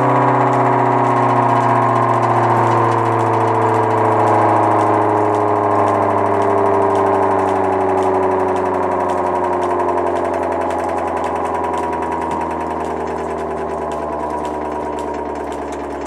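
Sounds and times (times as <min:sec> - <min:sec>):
air raid siren wailing: 0:00.0 - 0:16.0.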